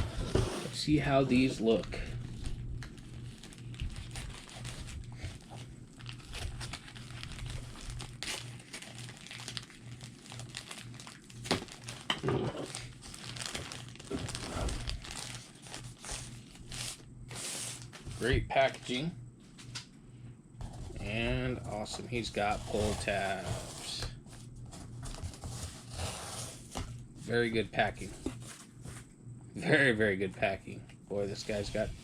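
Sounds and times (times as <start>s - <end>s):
steady low hum: 0.0s - 32.0s
cardboard packaging crinkling: 1.6s - 18.9s.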